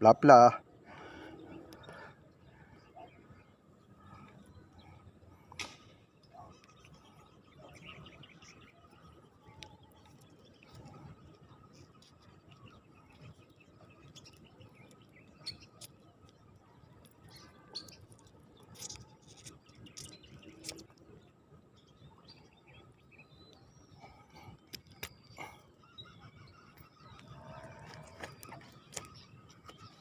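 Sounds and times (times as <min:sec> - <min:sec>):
bird chirps: 0:06.2 - 0:21.0
small clicks: 0:24.6 - 0:25.4.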